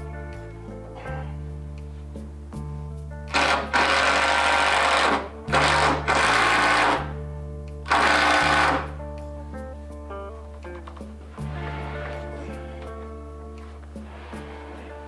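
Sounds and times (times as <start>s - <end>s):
background music: 0.0s - 15.0s
handheld power tool running: 3.3s - 7.2s, 7.9s - 9.0s.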